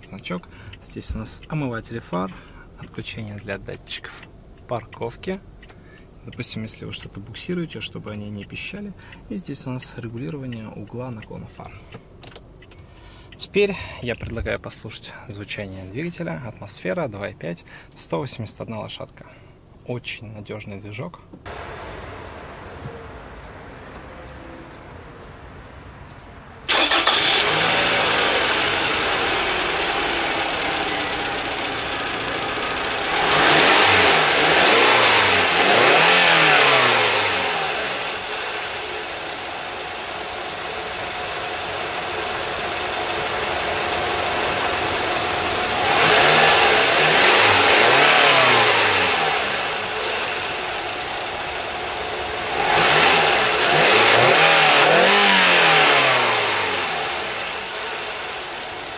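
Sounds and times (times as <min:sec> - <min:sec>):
car engine starting and idling: 0:21.4 - 0:58.9
car engine revving: 0:21.5 - 0:58.9.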